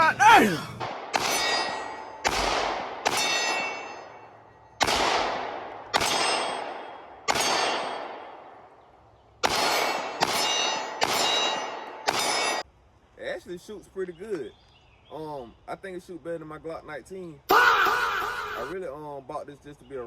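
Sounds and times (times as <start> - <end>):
pistol shots with ringing decay: 0.7 - 8.7, 9.4 - 12.6.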